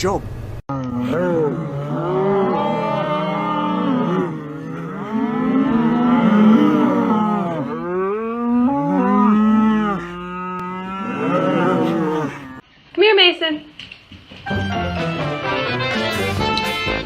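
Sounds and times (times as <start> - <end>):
long drawn-out animal calls: 0.7 - 12.6.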